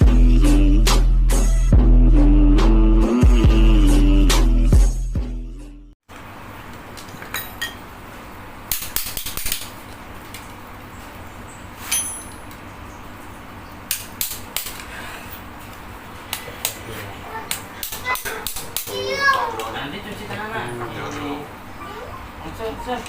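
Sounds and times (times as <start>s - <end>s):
metal tools clinking: 11.8s - 12.6s.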